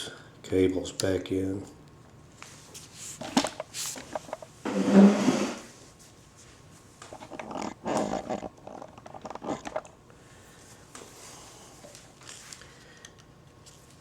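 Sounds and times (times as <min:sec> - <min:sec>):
cables being handled: 0:11.8 - 0:14.0.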